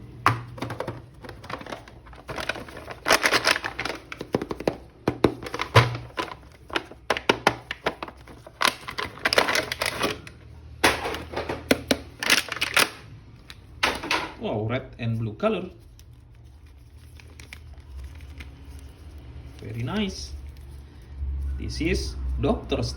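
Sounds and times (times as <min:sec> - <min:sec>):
plastic crinkling: 0:00.1 - 0:10.4, 0:11.8 - 0:13.8, 0:15.6 - 0:21.2
clicking and tapping plastic: 0:00.2 - 0:09.9.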